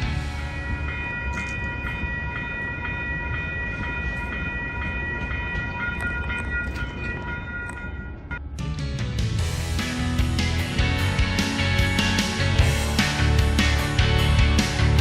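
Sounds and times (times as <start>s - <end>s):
bell ringing: 0.0s - 8.9s
train rumbling past: 0.0s - 15.0s.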